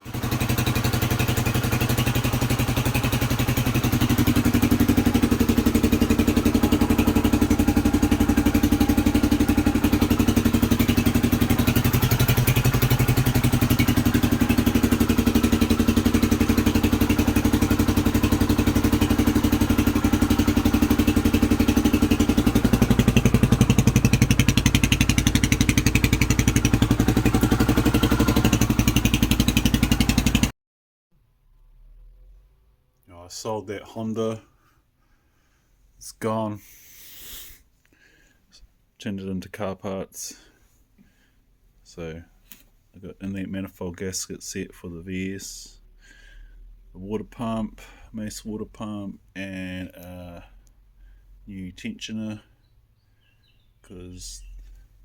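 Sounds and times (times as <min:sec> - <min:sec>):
engine running: 0:00.0 - 0:30.5.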